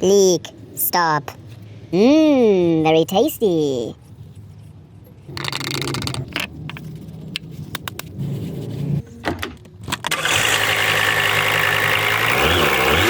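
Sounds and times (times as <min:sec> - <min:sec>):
starter cranking: 0:09.9 - 0:13.0.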